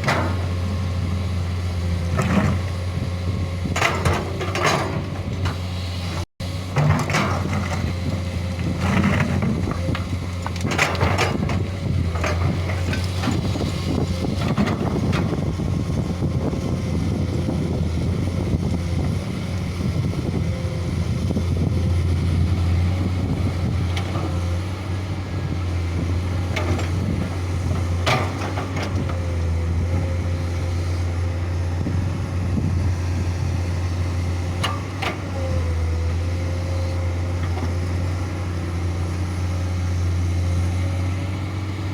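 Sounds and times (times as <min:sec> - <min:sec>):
excavator diesel engine running: 0:00.0 - 0:41.9.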